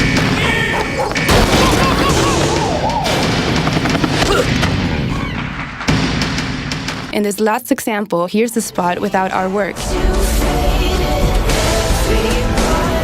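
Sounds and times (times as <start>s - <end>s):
gunfire effects: 1.1s - 4.6s.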